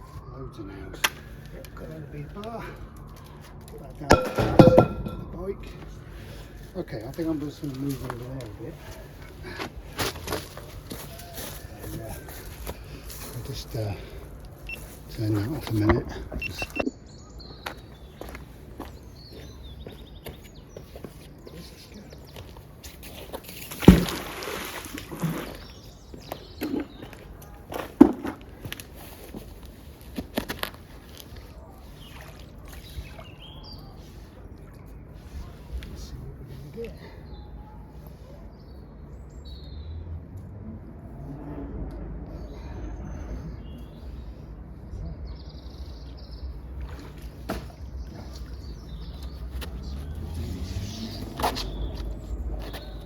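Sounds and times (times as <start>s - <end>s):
sharp knocks: 4.1s - 5.5s
sharp thumps: 4.1s - 5.6s
faint birds chirping: 10.4s - 23.6s, 25.3s - 27.8s, 31.0s - 40.4s, 42.2s - 53.0s.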